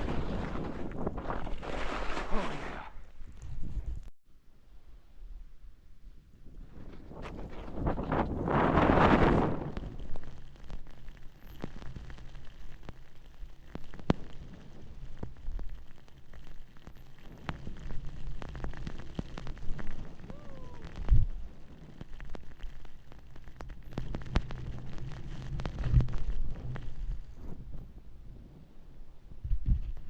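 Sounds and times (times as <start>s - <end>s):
skis running through snow: 0.0s - 3.9s
sharp crackles and clicks: 0.0s - 4.1s, 6.4s - 30.0s
wind buffeting microphone: 6.1s - 10.1s, 23.8s - 30.0s.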